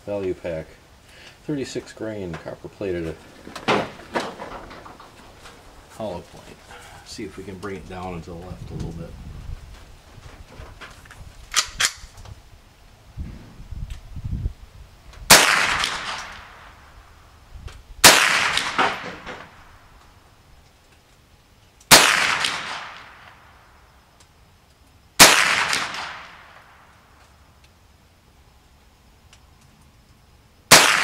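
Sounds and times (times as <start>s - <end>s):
rifle shots with echo: 15.3s - 16.8s, 18.0s - 19.6s, 21.9s - 23.4s, 25.2s - 26.9s, 30.7s - 31.0s.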